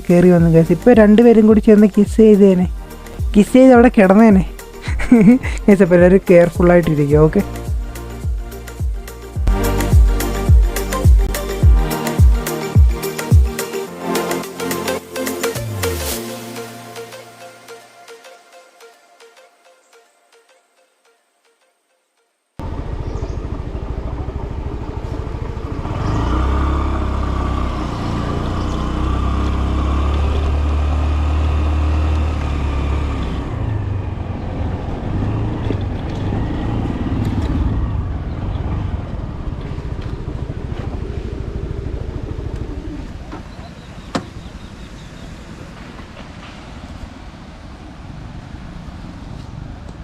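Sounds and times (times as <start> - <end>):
scooter engine and road noise: 0.0 - 16.2, 22.6 - 50.0
deep engine drone: 22.6 - 45.3.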